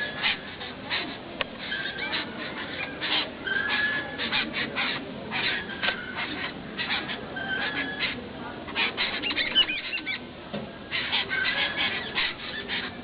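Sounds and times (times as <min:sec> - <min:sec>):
harsh chattering chirps: 0:00.0 - 0:10.3.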